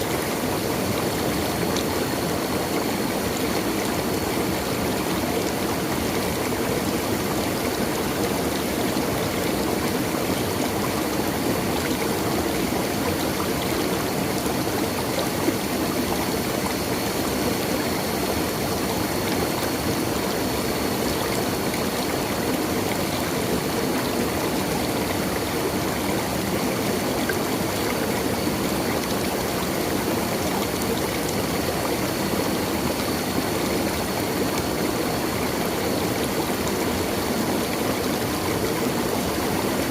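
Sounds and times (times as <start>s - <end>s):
stream water flowing: 0.0s - 39.9s.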